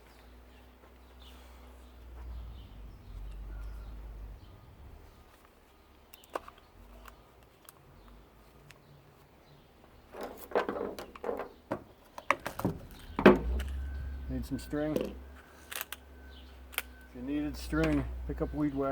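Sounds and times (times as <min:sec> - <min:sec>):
clattering knocks and rustles: 0:09.8 - 0:14.3.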